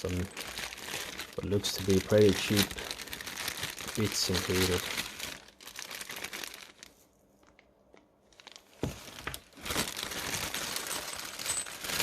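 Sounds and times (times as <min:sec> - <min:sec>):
plastic packaging crinkling: 0:00.0 - 0:12.0.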